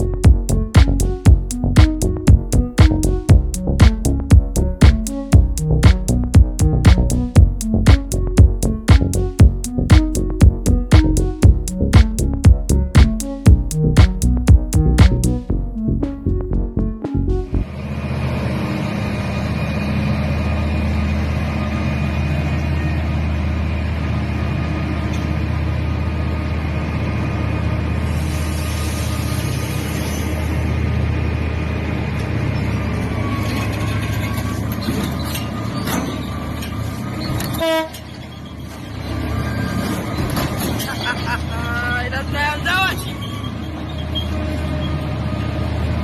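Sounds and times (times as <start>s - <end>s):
electronic music: 0.0s - 17.8s
heavy diesel engine humming: 0.0s - 46.0s.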